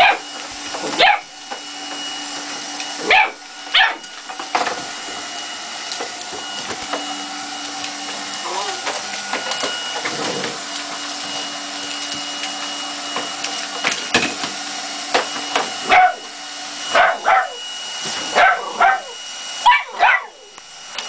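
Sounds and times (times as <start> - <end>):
puppies barking and yapping: 0.0 - 5.1, 15.1 - 20.6
window vacuum humming: 0.0 - 21.0.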